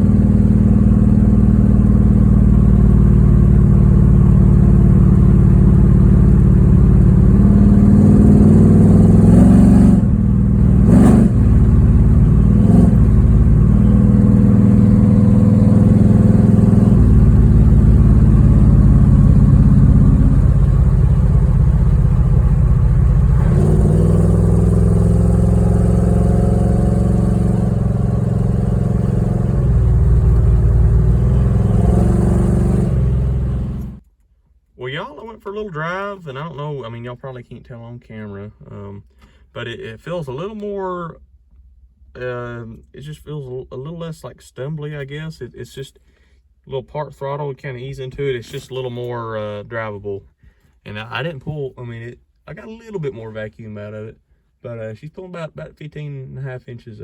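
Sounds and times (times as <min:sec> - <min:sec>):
car engine accelerating: 0:00.0 - 0:34.0.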